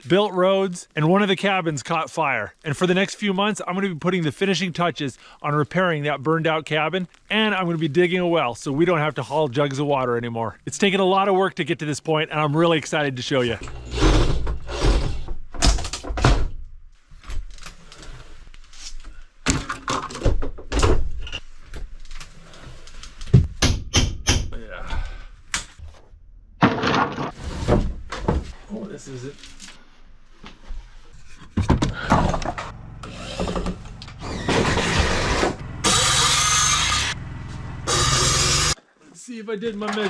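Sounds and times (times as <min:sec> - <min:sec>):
power tool whirring: 0:13.6 - 0:15.2, 0:32.6 - 0:38.8
knocks and rattles: 0:31.4 - 0:36.6.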